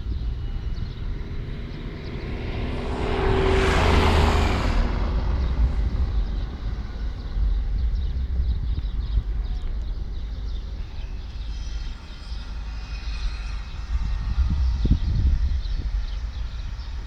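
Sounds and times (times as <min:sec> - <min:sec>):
vehicle passing by: 0:00.0 - 0:08.2
steady low rumble: 0:00.0 - 0:11.4.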